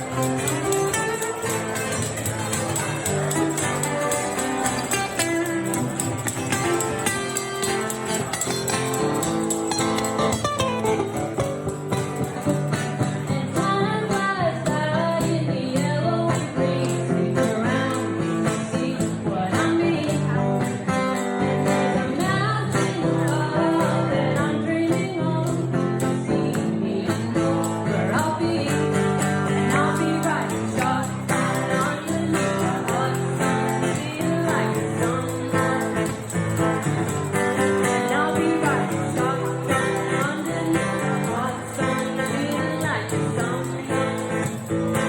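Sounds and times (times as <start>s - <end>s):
strummed guitar: 0.0s - 45.0s
tambourine shaking: 0.0s - 45.0s
person singing: 13.0s - 45.0s.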